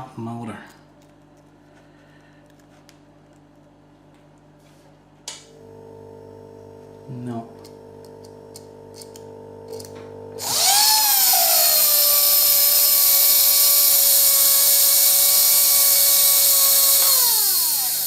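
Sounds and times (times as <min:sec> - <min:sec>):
small motor whining: 0:09.6 - 0:18.0.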